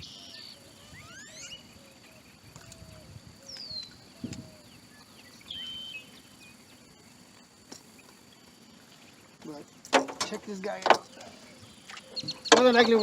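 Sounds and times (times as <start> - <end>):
downward-sliding bird whistle: 0.0 - 1.6.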